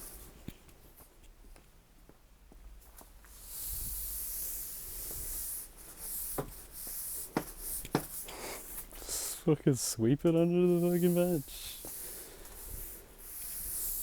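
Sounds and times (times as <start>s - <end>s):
brush sweeping hiss: 3.3s - 14.0s.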